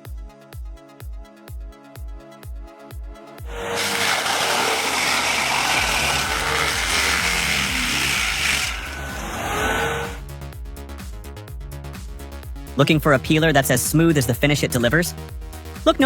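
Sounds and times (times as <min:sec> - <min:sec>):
loud machine roar: 0:03.5 - 0:10.2.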